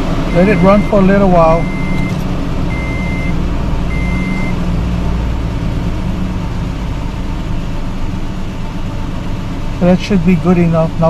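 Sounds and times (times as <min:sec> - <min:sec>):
truck engine idling: 0:00.0 - 0:11.0
electronic warning chime beeping: 0:00.3 - 0:04.6.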